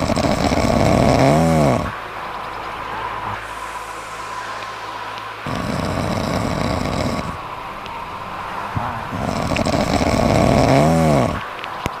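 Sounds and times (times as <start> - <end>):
cat snoring: 0.0 - 2.0, 5.4 - 7.4, 8.7 - 11.5
whistling tone: 0.6 - 12.0.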